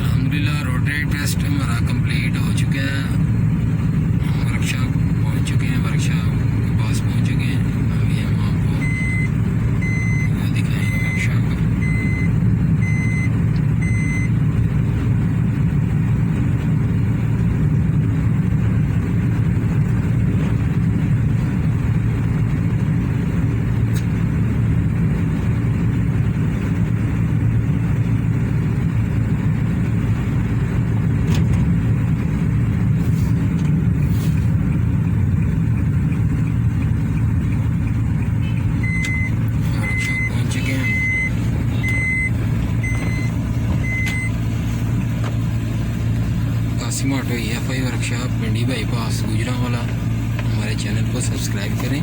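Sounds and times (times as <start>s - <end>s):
car engine rumble in cabin: 0.0s - 52.0s
high electronic beeps: 8.7s - 14.3s, 38.4s - 44.4s.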